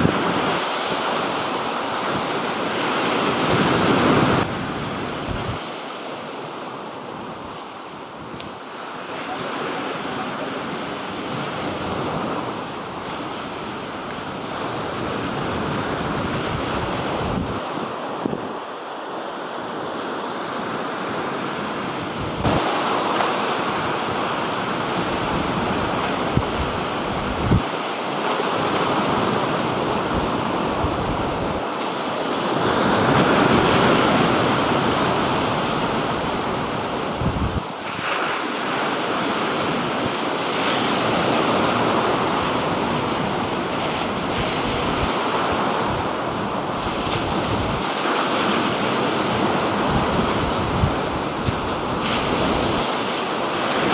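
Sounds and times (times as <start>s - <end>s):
waves washing onto shore: 0.0s - 53.9s
wind buffeting microphone: 3.4s - 5.7s, 14.4s - 18.6s, 22.2s - 22.8s, 24.9s - 27.8s, 32.8s - 38.0s, 43.9s - 47.9s, 49.4s - 52.9s.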